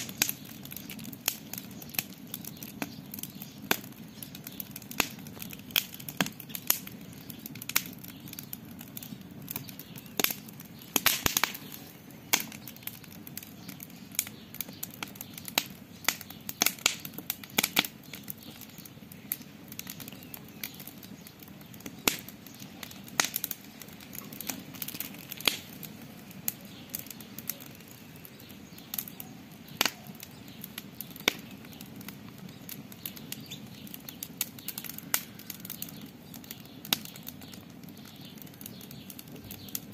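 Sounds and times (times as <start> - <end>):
campfire crackling: 0.0 - 39.9.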